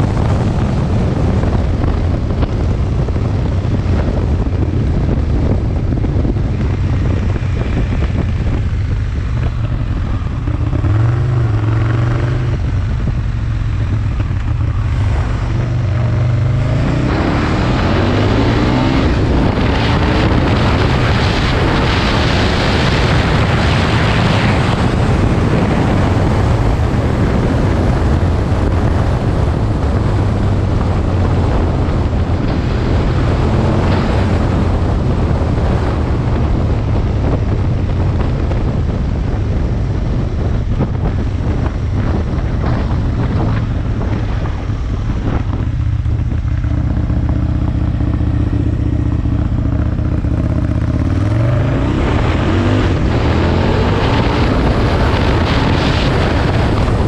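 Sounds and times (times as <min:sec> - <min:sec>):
motorcycle engine running: 0:00.0 - 0:57.0
wind rushing over microphone: 0:00.0 - 0:57.0.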